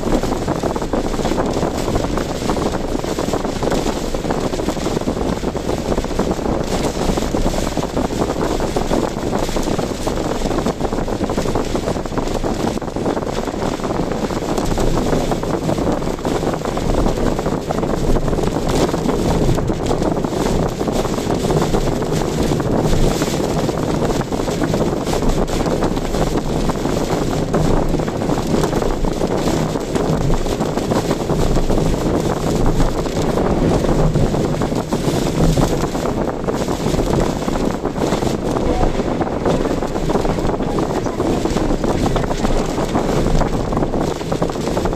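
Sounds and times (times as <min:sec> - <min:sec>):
road noise: 0:00.0 - 0:44.9
wind buffeting microphone: 0:00.0 - 0:44.9
wind rushing: 0:00.0 - 0:44.9.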